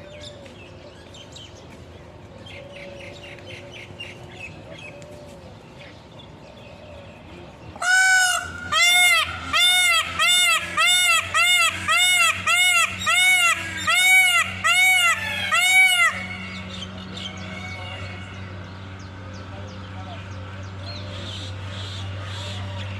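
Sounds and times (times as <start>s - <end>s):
honking calls: 7.8s - 18.6s.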